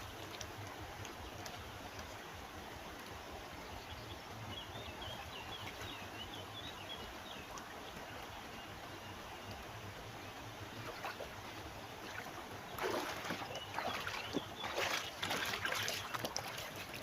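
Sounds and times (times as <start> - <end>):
water splashing and sloshing: 0.0 - 3.4, 10.4 - 17.0
river water flowing: 0.0 - 17.0.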